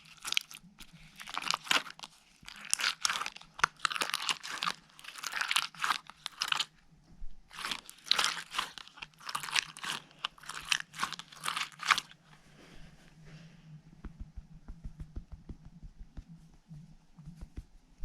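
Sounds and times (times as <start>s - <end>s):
slime squished by hand: 0.0s - 6.7s, 7.5s - 12.2s.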